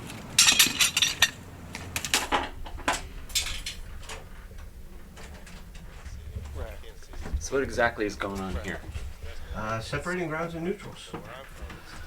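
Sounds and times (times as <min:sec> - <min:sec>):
metal clinking and clattering: 0:00.0 - 0:09.4.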